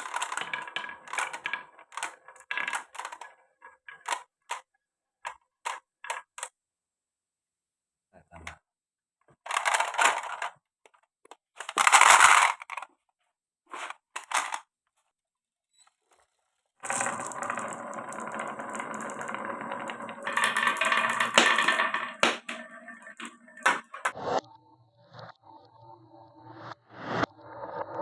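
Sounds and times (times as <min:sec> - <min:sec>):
marbles clattering on wooden track: 0:00.0 - 0:04.7, 0:05.3 - 0:06.5, 0:09.4 - 0:12.9, 0:13.7 - 0:14.7, 0:16.8 - 0:24.2.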